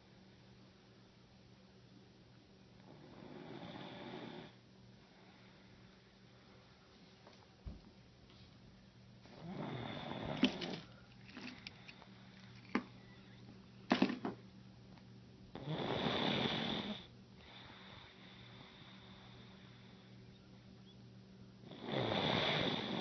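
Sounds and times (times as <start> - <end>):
person snoring: 9.3 - 10.9, 15.6 - 19.8, 21.7 - 23.0.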